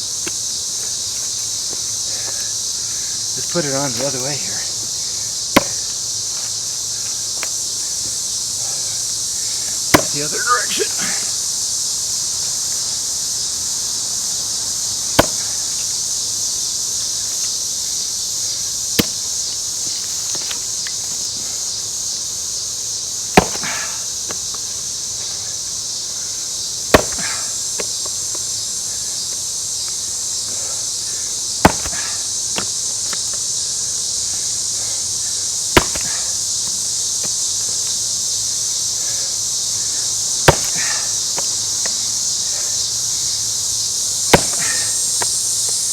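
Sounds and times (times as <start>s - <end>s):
high insect chorus: 0.0s - 45.9s
axe striking log: 5.5s - 5.9s, 9.9s - 11.1s, 15.2s - 15.7s, 19.0s - 19.3s, 23.4s - 24.4s, 26.9s - 27.9s, 31.6s - 33.3s, 35.8s - 36.4s, 40.4s - 41.5s, 44.3s - 45.3s.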